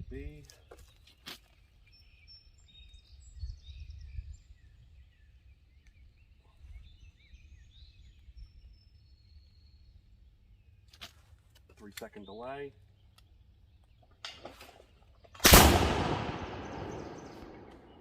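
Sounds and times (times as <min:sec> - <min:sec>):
wind rumble on microphone: 0:00.0 - 0:00.4, 0:02.1 - 0:10.7
songbirds chirping: 0:00.0 - 0:18.0.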